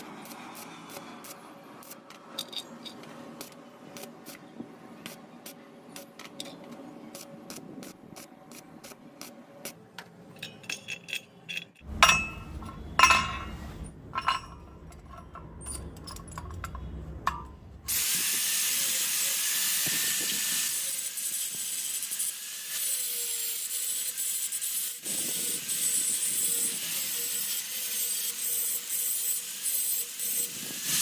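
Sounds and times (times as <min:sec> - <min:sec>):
loud metal clanks: 0:10.4 - 0:17.6
low hum: 0:11.8 - 0:17.9
loud steady hiss: 0:17.9 - 0:23.3.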